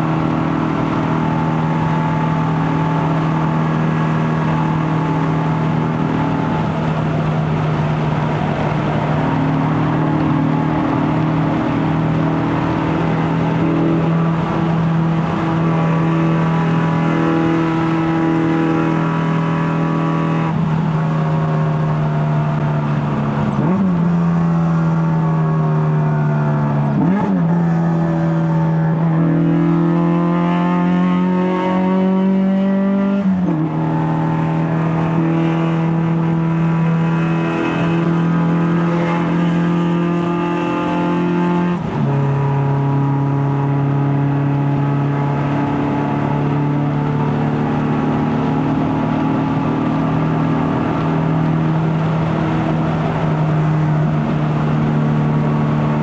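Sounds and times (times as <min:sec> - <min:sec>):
car engine and exhaust accelerating: 0:00.0 - 0:56.0.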